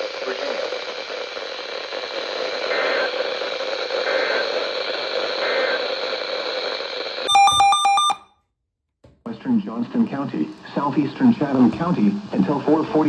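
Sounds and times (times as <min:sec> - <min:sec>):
radio static hiss: 0:00.0 - 0:07.2
faint short tones: 0:07.3 - 0:08.2
pulsing electronic alert tone: 0:07.3 - 0:08.2.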